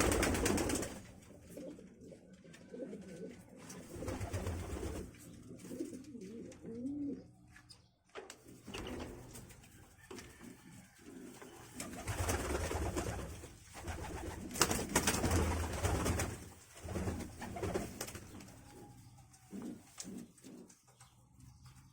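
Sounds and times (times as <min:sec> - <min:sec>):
doves cooing: 0:01.4 - 0:07.4.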